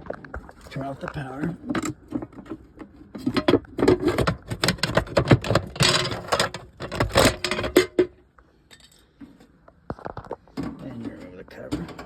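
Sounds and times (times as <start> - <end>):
metal clicking and rattling: 1.6 - 8.1.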